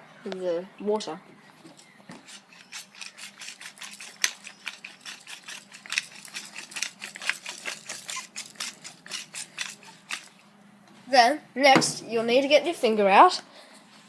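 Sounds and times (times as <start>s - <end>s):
pepper grinder clicking: 2.5s - 10.3s.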